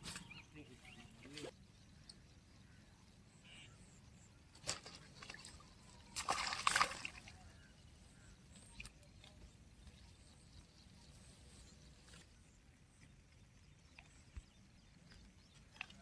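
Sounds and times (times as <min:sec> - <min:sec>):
water splashing: 0:04.6 - 0:07.6.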